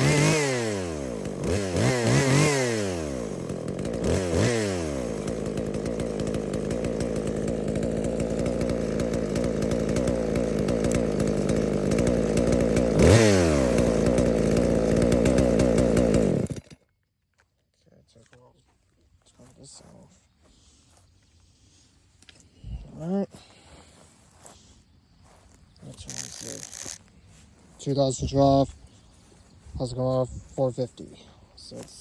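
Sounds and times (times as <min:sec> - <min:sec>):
chainsaw engine revving: 0:00.0 - 0:16.8, 0:25.8 - 0:27.1.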